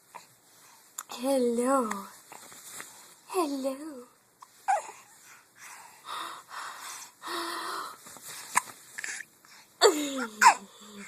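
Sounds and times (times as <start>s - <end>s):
baby hiccuping: 10.4s - 10.7s.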